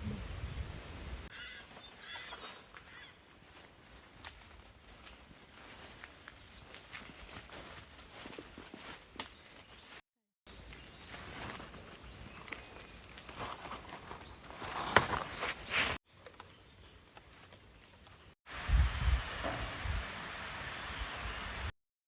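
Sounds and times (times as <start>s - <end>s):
leaves and twigs rustling: 1.6s - 18.7s
wind buffeting microphone: 18.6s - 20.1s.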